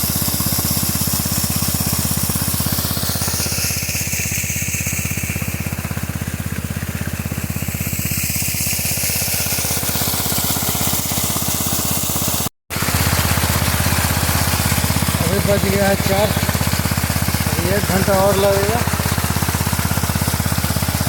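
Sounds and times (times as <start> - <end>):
pump engine running: 0.0 - 21.0.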